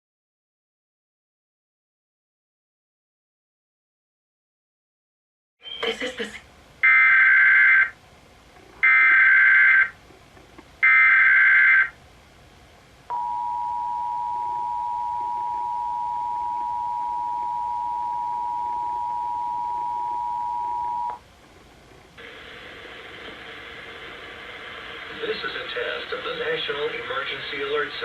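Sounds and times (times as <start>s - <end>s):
two-tone alert signal: 13.1s - 21.2s.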